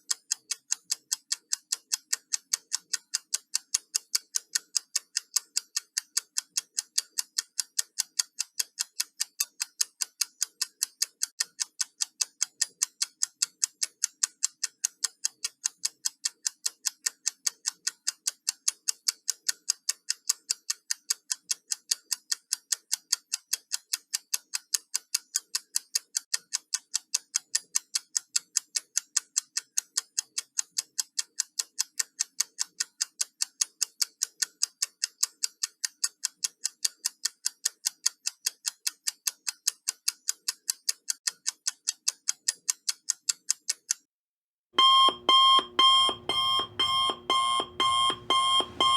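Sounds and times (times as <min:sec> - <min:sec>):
fast clock ticks: 0:00.0 - 0:44.1, 0:44.8 - 0:48.9.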